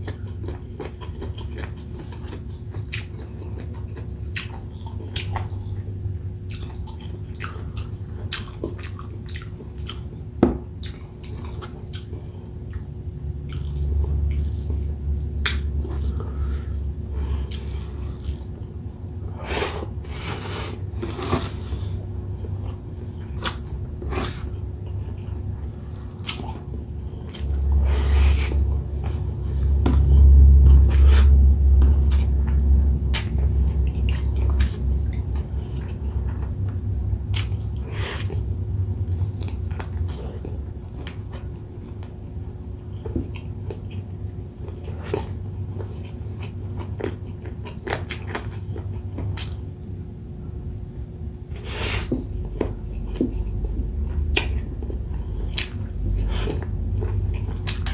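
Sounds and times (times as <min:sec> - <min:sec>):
close chewing and mouth smacks: 0:00.0 - 0:50.1, 0:51.6 - 0:57.9
deep low rumble: 0:23.8 - 0:42.5.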